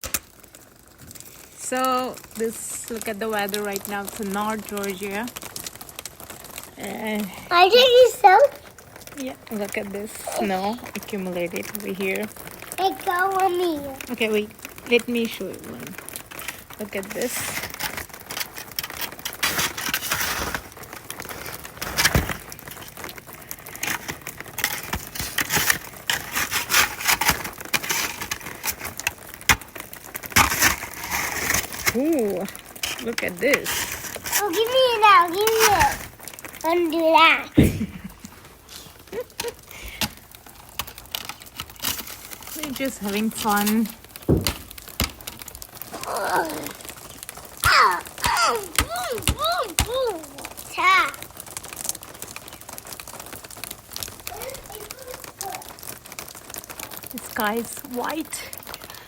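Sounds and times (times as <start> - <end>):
icy snow crunching: 7.5 - 51.7
person groaning and sighing: 45.9 - 46.8.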